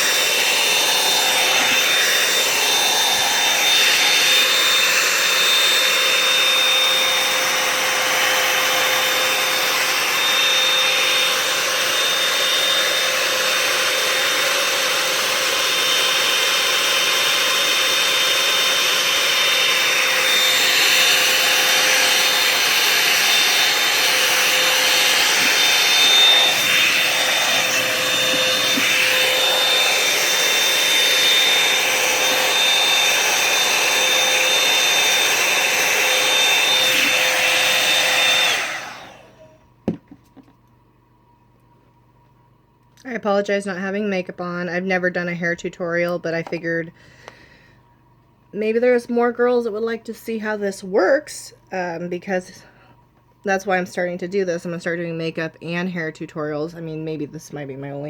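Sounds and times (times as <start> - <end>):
hair dryer blowing air: 0.0 - 40.1.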